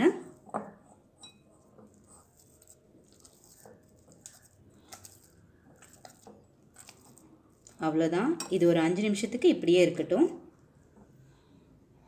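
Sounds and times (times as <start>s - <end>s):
hands kneading dough: 0.0s - 8.2s.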